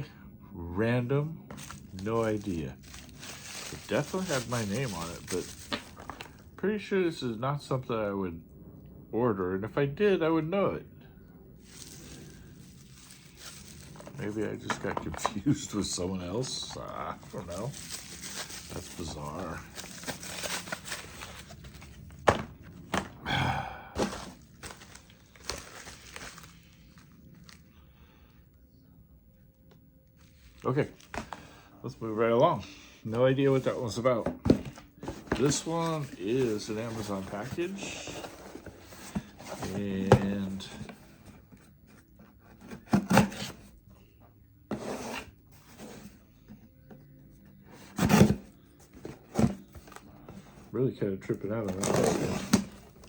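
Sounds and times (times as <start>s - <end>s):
packaging rustle: 1.5s - 6.5s, 11.6s - 22.3s, 24.0s - 27.8s, 51.5s - 53.0s.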